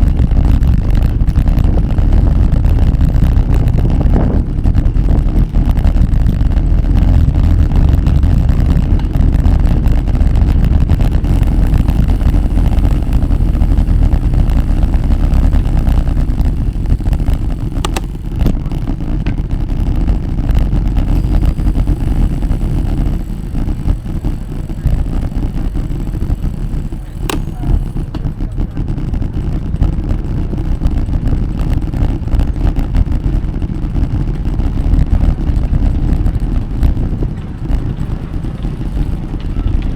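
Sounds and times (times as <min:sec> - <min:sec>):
wind buffeting microphone: 0:00.0 - 0:39.9
sharp clicks: 0:11.0 - 0:18.7, 0:21.0 - 0:28.3.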